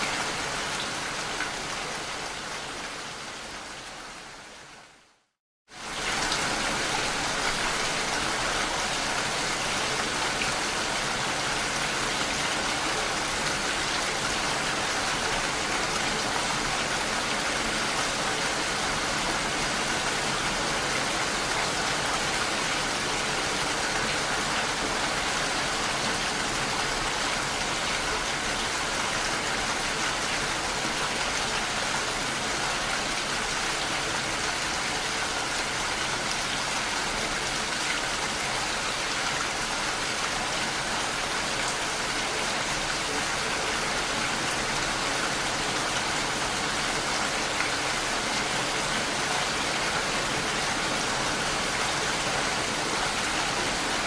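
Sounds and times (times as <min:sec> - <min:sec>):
heavy rain falling: 0:00.0 - 0:04.6, 0:05.7 - 0:54.0.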